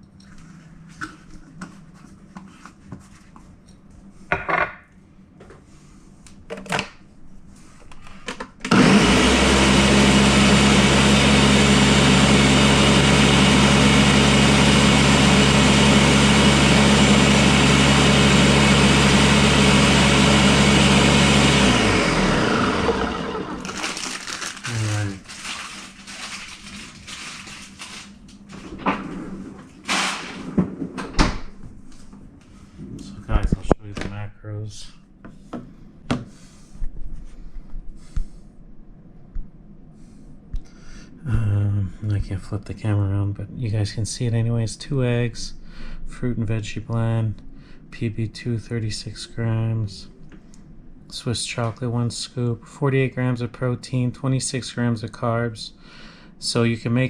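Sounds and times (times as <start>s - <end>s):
blender running: 8.6s - 26.3s, 29.9s - 30.4s.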